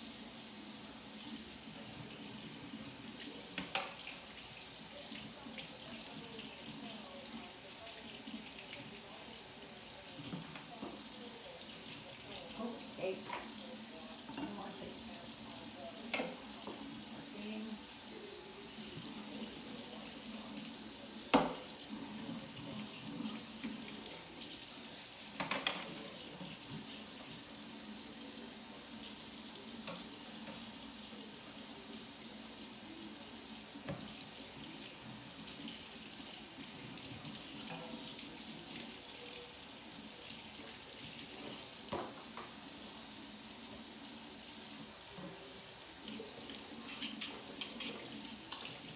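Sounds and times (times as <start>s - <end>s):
sink tap running: 18.2s - 32.6s.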